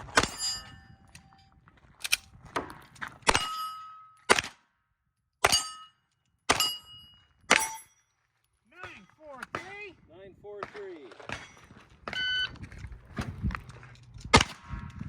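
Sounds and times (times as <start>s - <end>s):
steel plate ringing: 0.2s - 0.8s, 3.4s - 4.2s, 5.4s - 8.0s.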